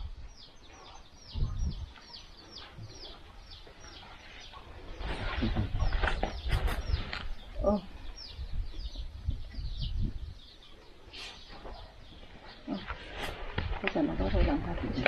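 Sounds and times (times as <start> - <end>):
bird chirping: 0.0 - 15.0
rustling: 11.2 - 15.0.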